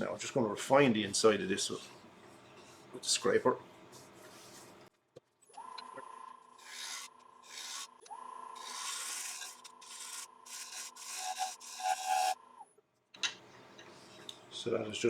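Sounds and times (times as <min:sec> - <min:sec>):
scraper hissing on spinning wood: 0:06.6 - 0:08.0, 0:08.6 - 0:12.4
wood lathe whining: 0:06.6 - 0:12.4.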